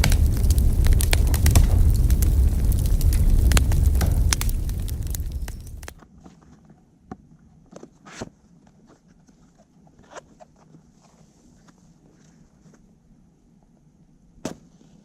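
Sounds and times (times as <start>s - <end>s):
sharp pops and snaps of fire: 0.0s - 6.0s
wood fire crackling: 0.0s - 6.0s.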